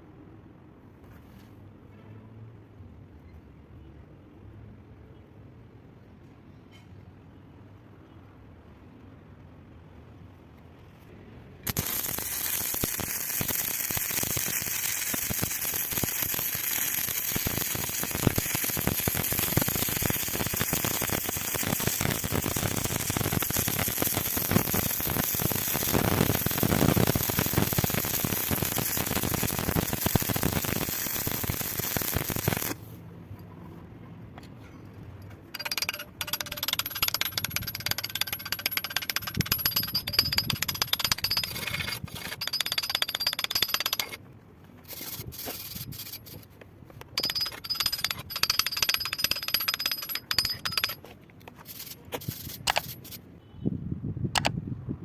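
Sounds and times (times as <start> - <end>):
welding arc crackling and hissing: 11.7 - 32.8.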